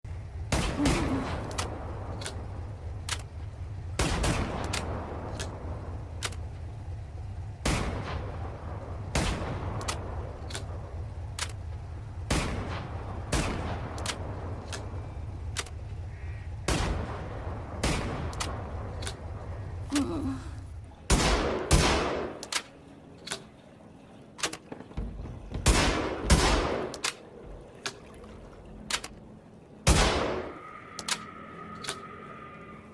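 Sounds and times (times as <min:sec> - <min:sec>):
steady low rumble: 0:00.0 - 0:32.9
shotgun firing: 0:25.6 - 0:27.0.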